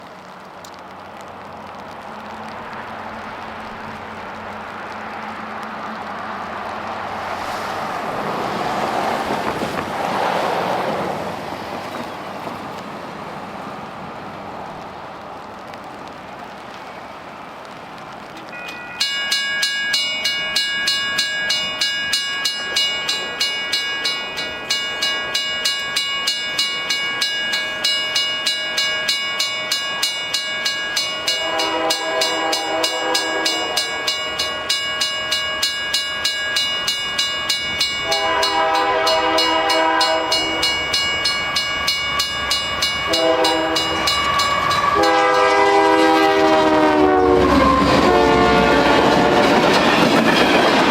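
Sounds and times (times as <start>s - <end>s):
railroad crossing bell ringing: 18.4s - 50.9s
locomotive air horn blasts: 31.2s - 34.3s, 38.0s - 40.6s, 43.0s - 49.6s.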